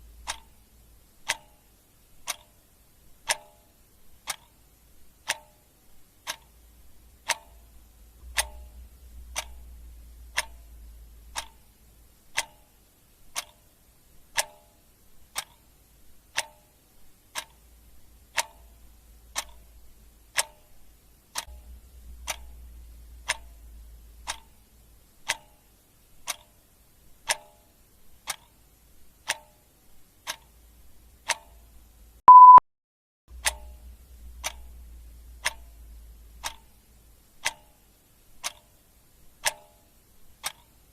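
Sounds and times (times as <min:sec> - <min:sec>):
clock ticking: 0:00.0 - 0:32.6, 0:33.3 - 0:40.9
short high electronic beep: 0:32.3 - 0:32.6.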